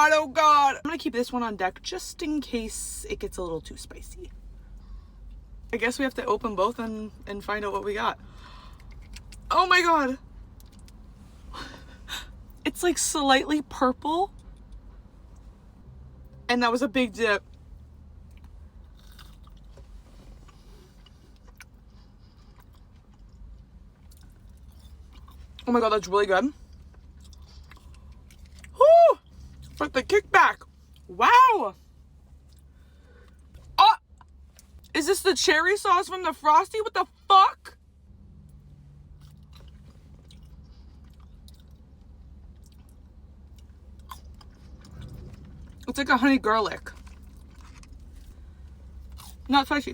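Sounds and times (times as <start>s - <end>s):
low steady hum: 0.0s - 49.9s
person chewing: 18.3s - 25.6s, 26.7s - 28.8s, 39.2s - 45.8s, 47.0s - 49.5s.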